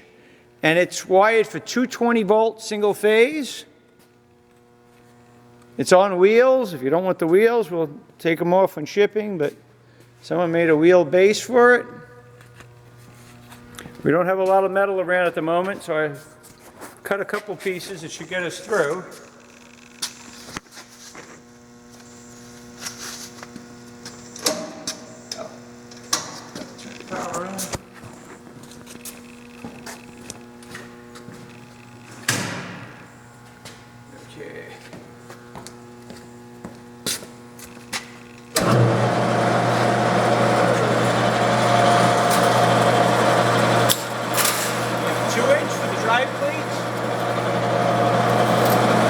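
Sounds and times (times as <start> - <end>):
electrical hum: 0.0 - 49.0
rollformer machine running: 38.1 - 49.0.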